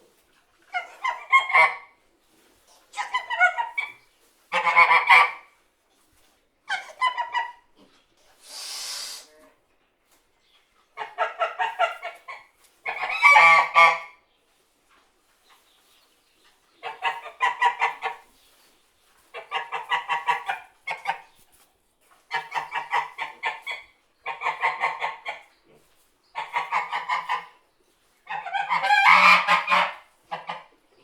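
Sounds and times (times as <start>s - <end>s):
goose honking: 4.5s - 5.5s, 12.8s - 14.1s, 28.3s - 30.7s.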